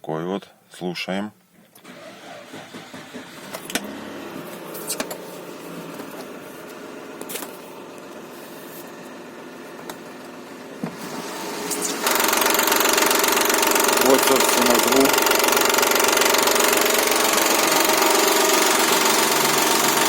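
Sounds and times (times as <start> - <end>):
engine running with rattling clatter: 12.0 - 20.0.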